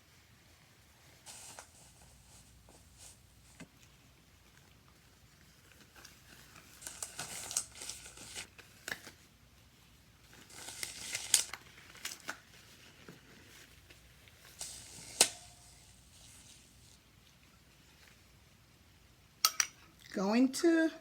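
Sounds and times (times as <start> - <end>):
rustling and crinkling: 0.0 - 18.4
sharp taps of utensils: 19.4 - 19.8.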